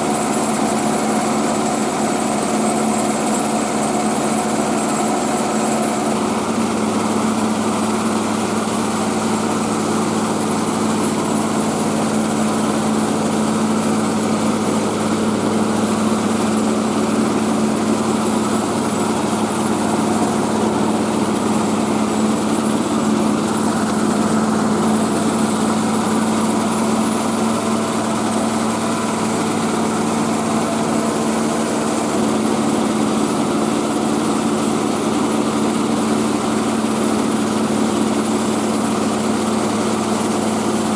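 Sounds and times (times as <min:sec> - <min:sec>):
rice-milling machine running: 0:00.0 - 0:40.9.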